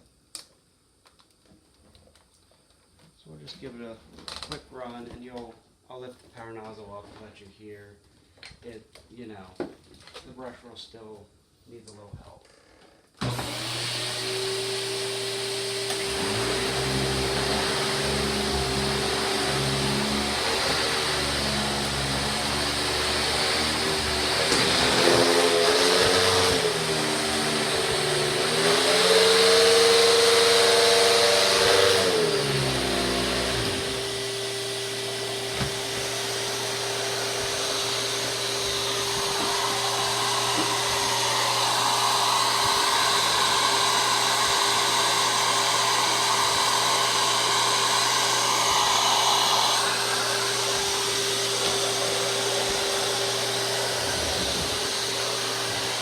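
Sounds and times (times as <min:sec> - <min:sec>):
vacuum cleaner motor whine: 0:13.2 - 0:56.0.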